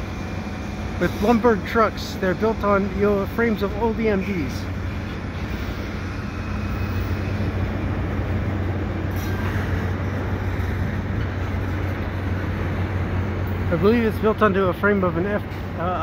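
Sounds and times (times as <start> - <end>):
locomotive engine drone: 0.0 - 16.0.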